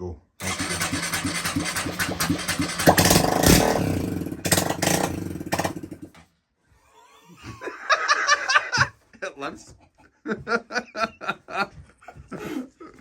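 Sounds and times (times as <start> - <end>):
electric starter cranking: 0.4 - 6.2
motorcycle engine revving: 0.4 - 6.2.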